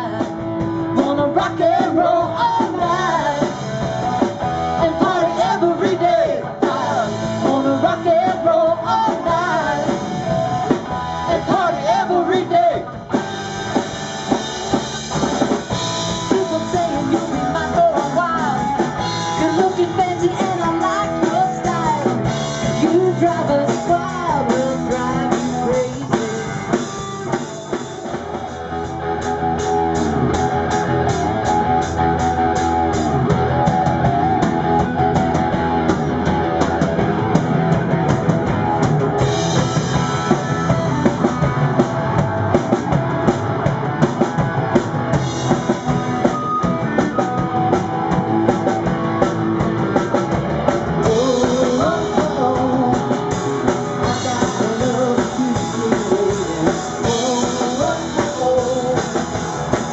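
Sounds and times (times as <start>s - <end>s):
bass guitar: 0.0s - 59.9s
drum kit beat: 0.0s - 59.9s
electric guitar: 0.0s - 59.9s.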